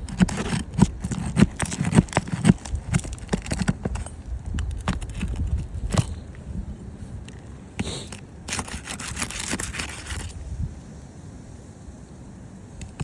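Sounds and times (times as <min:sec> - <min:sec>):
nail knocking and scraping on shingles: 0:00.0 - 0:06.2, 0:07.8 - 0:10.4.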